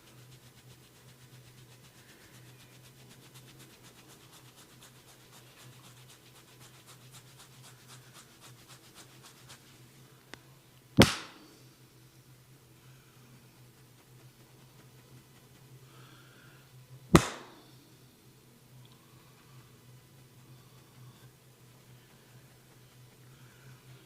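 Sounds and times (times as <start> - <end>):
light tapping massage strokes: 0.0 - 11.6, 12.3 - 17.8, 18.6 - 24.0
loud sharp crack: 11.0 - 11.5, 17.1 - 17.6.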